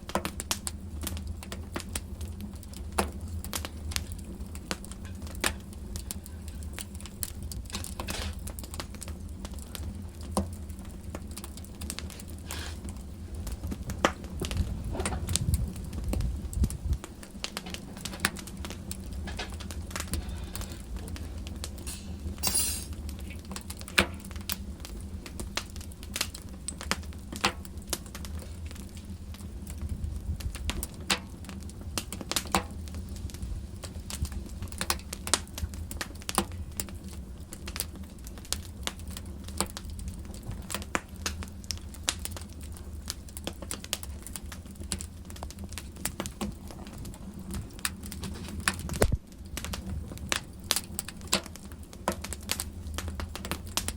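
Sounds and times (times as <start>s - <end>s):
fire crackling and popping: 0.0s - 53.9s
low rumble of flames: 0.0s - 53.9s.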